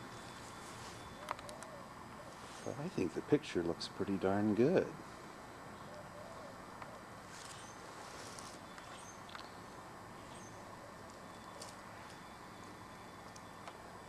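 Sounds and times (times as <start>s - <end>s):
steady low hiss: 0.0s - 14.0s
faint high bird chirps: 8.6s - 13.7s.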